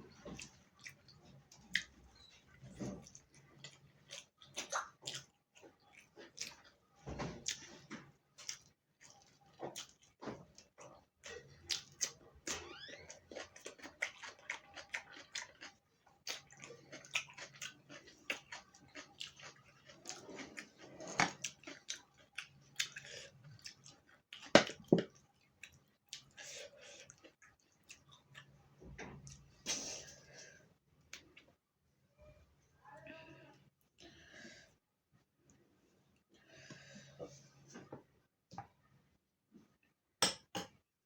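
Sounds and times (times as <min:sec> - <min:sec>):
person chewing with wet smacks: 0:00.1 - 0:28.6.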